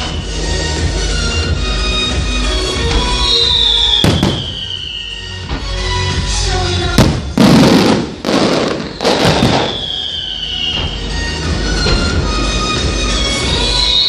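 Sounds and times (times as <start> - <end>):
music: 0.0 - 14.0
fireworks bursting and crackling: 2.7 - 14.0
high falling whistle: 2.8 - 5.5, 8.2 - 11.5, 13.3 - 14.0.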